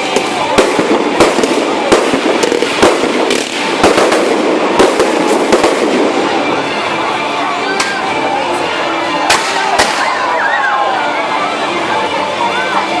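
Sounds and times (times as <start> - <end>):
firework bangs: 0.0 - 6.8, 9.2 - 10.2
firework crackle: 0.0 - 8.3, 9.2 - 10.3.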